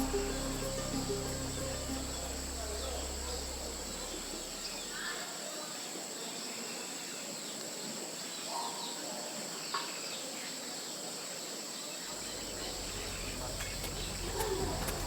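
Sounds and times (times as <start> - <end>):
bird chirps: 0.0 - 5.0, 12.2 - 15.0
high-pitched insect drone: 0.0 - 5.0, 12.2 - 15.0.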